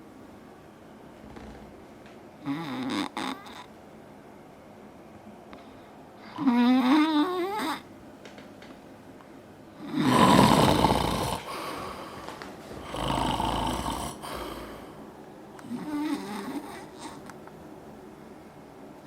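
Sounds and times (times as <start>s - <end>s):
man snoring: 2.4s - 3.6s, 9.8s - 11.7s, 12.8s - 14.8s, 15.7s - 17.1s.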